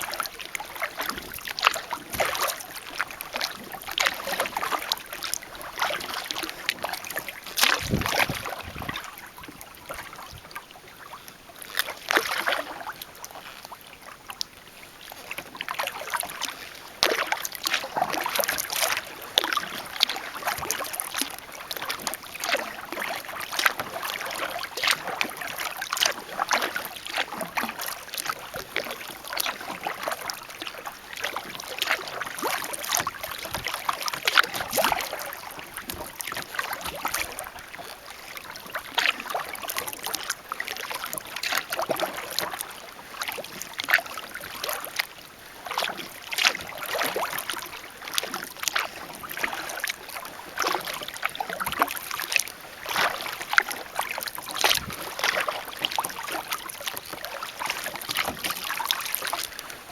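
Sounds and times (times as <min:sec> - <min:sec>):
paddle splashing water: 0:00.0 - 0:59.9
water dripping off paddle: 0:15.7 - 0:59.8.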